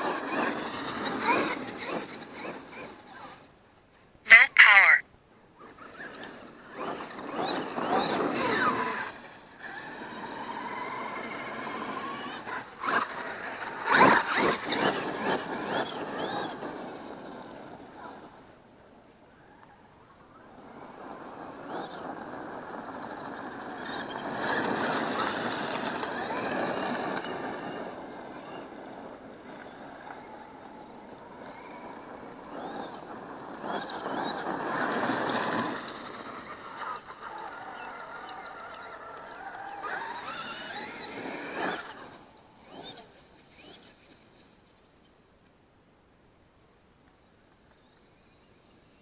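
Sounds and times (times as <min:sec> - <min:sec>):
toy truck motor whining: 0:00.0 - 0:03.4, 0:31.2 - 0:44.3.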